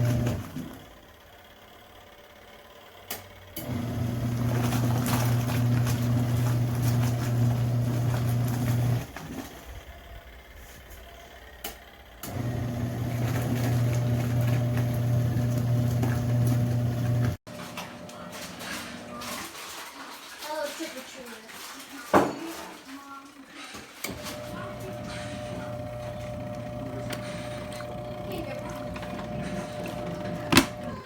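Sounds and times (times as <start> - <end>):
washing machine motor humming: 0.0 - 19.9, 22.8 - 31.0.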